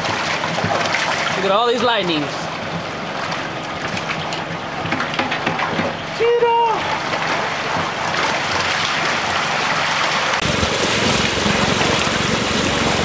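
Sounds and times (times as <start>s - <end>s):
water gushing into lake: 6.8s - 13.0s.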